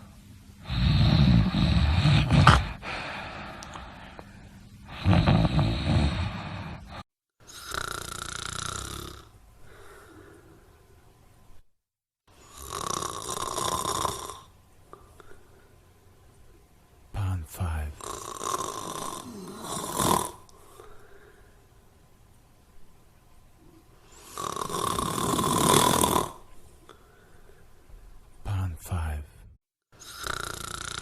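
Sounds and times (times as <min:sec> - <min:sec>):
loud low snores: 0:00.6 - 0:03.0, 0:04.9 - 0:09.8, 0:12.4 - 0:14.5, 0:18.0 - 0:20.5, 0:24.1 - 0:26.5, 0:30.0 - 0:31.0
breathy hissy snore: 0:00.6 - 0:04.1, 0:04.8 - 0:10.7, 0:12.3 - 0:15.6, 0:18.0 - 0:21.7, 0:24.0 - 0:27.6, 0:30.0 - 0:31.0.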